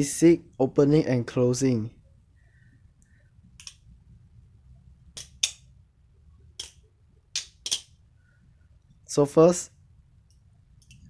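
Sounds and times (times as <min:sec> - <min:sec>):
butterfly knife handles clicking: 0:03.6 - 0:03.8, 0:10.3 - 0:11.0.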